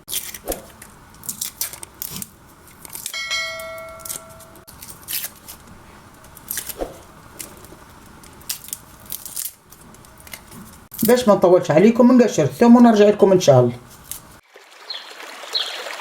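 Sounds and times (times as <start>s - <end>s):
garlic skin crackling: 0.0s - 11.2s, 13.9s - 14.4s
bell-like ring: 3.1s - 4.7s.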